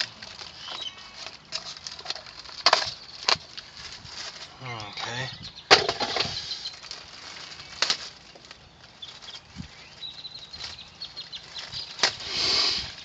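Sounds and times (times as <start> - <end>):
hissy rustle: 6.3 - 13.0.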